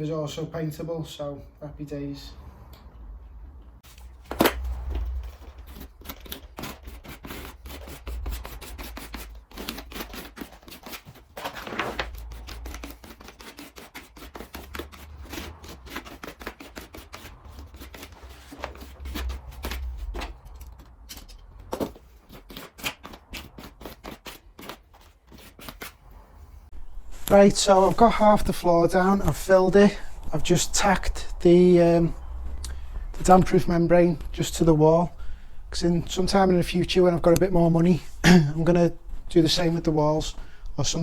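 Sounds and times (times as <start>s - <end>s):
scraper scraping and clicking: 3.8s - 26.0s.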